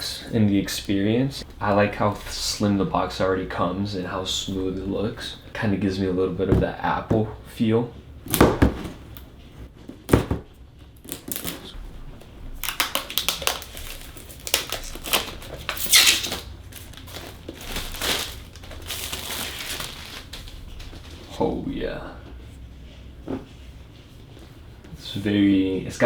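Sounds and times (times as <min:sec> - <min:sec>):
cardboard box crinkling: 0:12.6 - 0:20.6.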